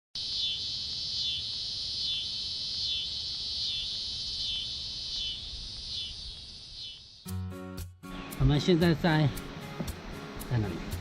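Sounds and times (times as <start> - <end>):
insects buzzing: 0.2 - 11.0.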